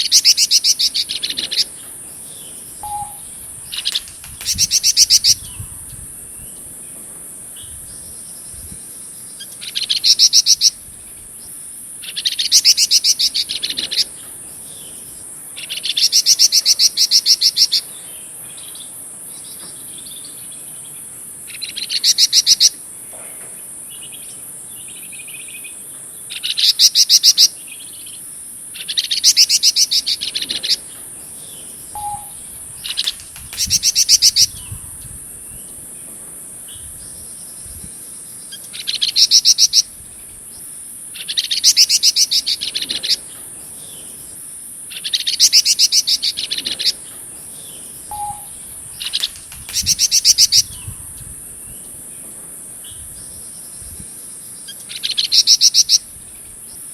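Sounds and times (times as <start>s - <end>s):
songbird rattling trill: 0.0s - 17.9s, 28.8s - 53.9s
high-pitched insect drone: 2.8s - 6.6s, 31.9s - 35.7s, 48.1s - 51.8s.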